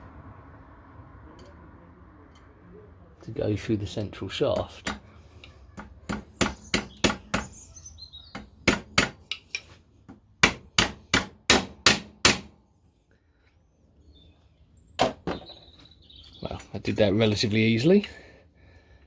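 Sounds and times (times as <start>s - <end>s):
hammer striking metal pin: 10.4s - 12.5s.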